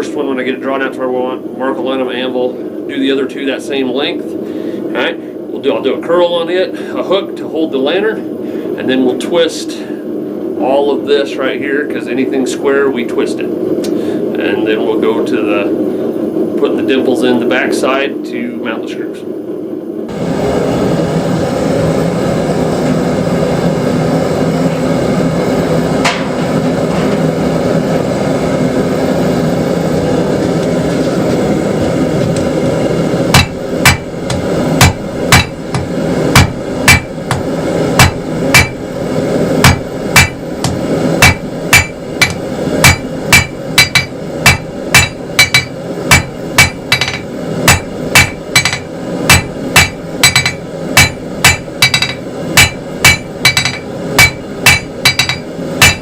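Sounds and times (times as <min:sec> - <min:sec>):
steady rushing noise: 0:20.0 - 0:56.0
hammer striking steel on anvil: 0:33.3 - 0:38.8, 0:39.6 - 0:56.0.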